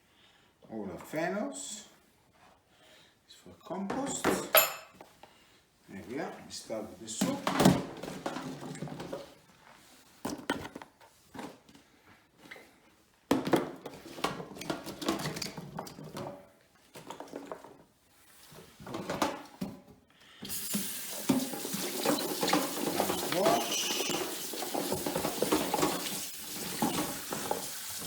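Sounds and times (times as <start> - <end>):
knocks and handling noises: 7.2 - 12.5, 13.3 - 20.0, 20.7 - 28.0
tap water running into sink: 20.5 - 28.0.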